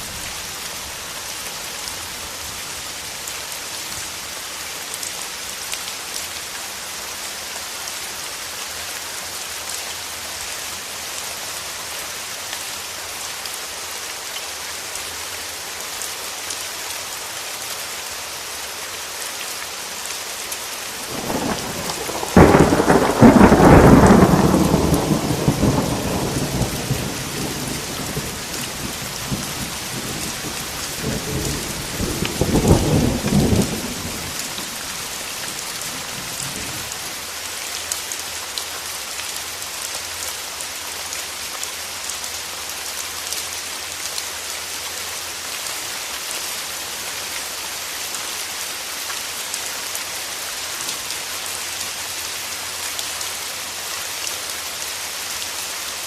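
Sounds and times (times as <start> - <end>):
steady rain: 0.0 - 56.0
thunder crack and rumble: 21.1 - 34.7.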